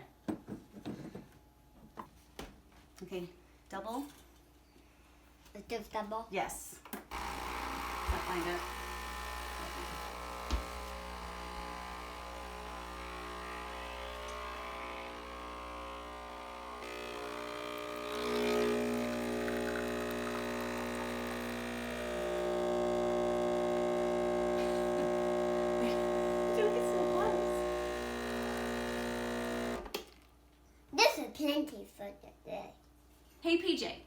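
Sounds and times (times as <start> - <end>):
espresso machine pump humming: 7.1 - 30.0.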